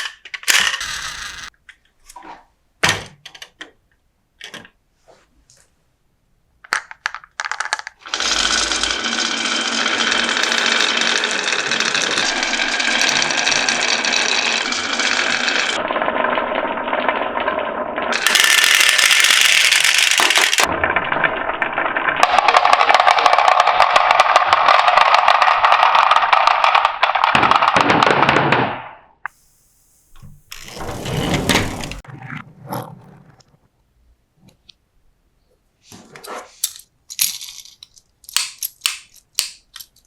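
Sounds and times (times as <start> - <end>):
marbles rattling down wooden tracks: 0.5 - 1.5, 6.8 - 20.8, 21.8 - 27.8.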